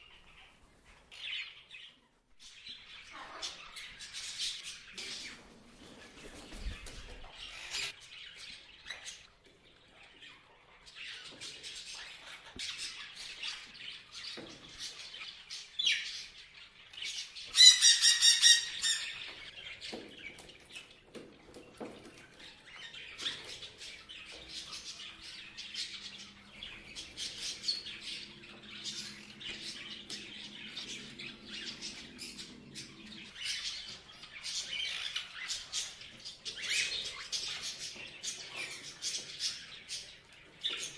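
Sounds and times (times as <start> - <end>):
parrots chirping: 14.9 - 20.4, 22.4 - 40.1.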